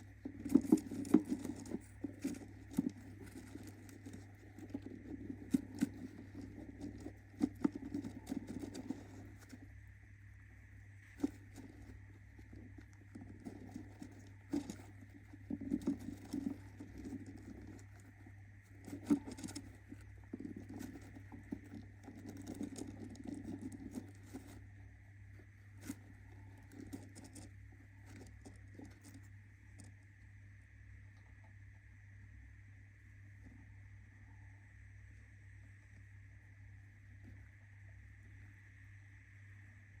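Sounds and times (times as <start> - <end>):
bird rustling in nest: 0.0 - 30.0
steady background hum: 0.0 - 40.0.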